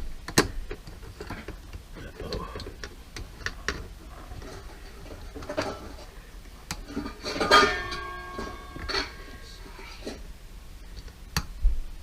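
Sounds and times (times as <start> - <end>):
clicks and knocks of parts: 0.2 - 6.1
ringing metallic clank: 7.2 - 9.6.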